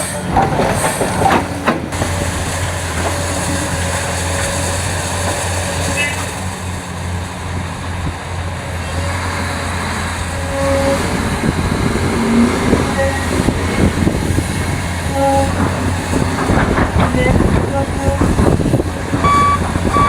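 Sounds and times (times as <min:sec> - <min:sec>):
rattling and clanking: 0:00.0 - 0:06.6, 0:08.0 - 0:20.0
heavy diesel machinery running: 0:00.0 - 0:20.0
short tones: 0:10.1 - 0:14.4, 0:15.0 - 0:20.0.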